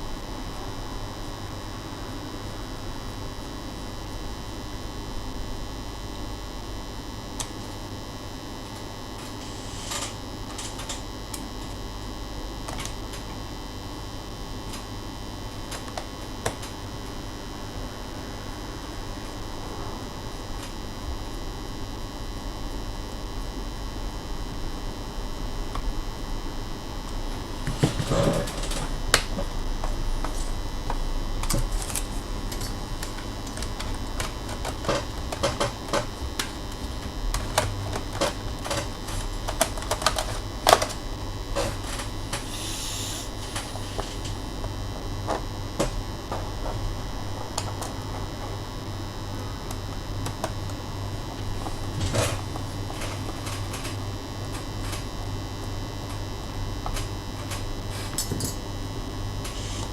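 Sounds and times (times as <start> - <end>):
electrical hum: 0.0 - 59.9
scraping hiss: 9.4 - 10.2, 41.6 - 44.4, 59.5 - 59.9.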